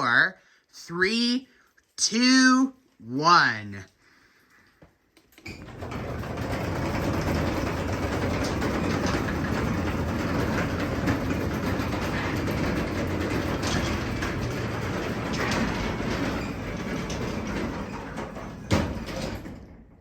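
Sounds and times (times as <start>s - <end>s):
garage door rattling: 5.3s - 20.0s
garage door opener motor hum: 5.4s - 20.0s.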